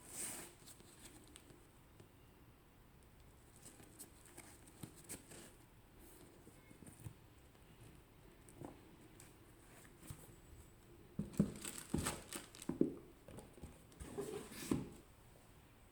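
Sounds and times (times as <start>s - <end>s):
paper and packaging rustling: 11.2s - 15.0s.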